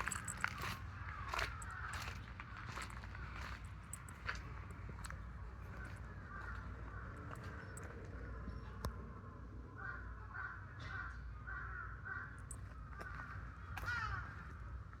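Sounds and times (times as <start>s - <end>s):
steady low rumble: 0.0s - 10.2s.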